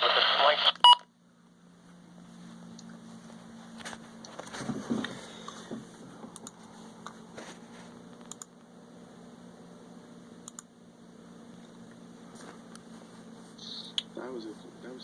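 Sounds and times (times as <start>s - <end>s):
steady low hum: 0.0s - 15.0s
keyboard clicks: 8.2s - 8.5s, 10.4s - 10.7s.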